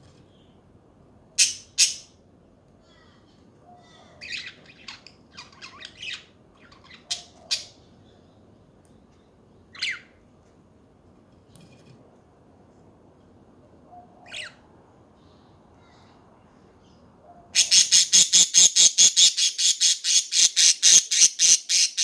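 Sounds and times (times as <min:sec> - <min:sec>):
budgerigars chattering: 0:17.6 - 0:22.0.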